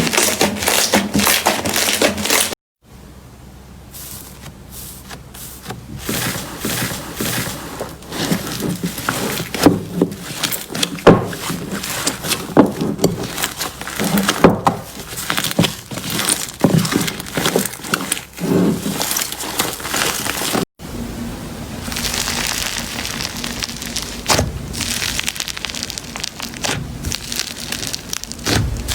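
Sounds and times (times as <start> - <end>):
steady crackling: 21.8 - 28.9
slime squelching and popping: 21.9 - 28.9.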